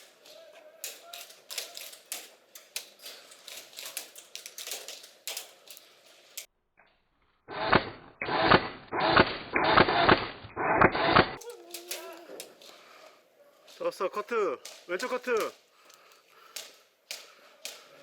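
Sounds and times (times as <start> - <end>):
airsoft guns firing: 7.5 - 12.2.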